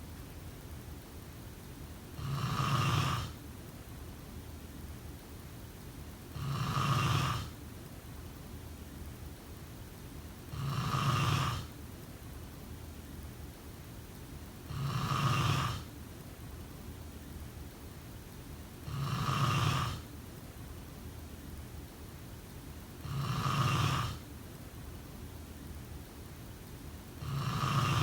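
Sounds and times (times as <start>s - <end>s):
person snoring: 2.2s - 3.4s, 6.3s - 7.5s, 10.5s - 11.7s, 14.7s - 15.9s, 18.8s - 20.0s, 23.0s - 24.2s, 27.2s - 28.0s.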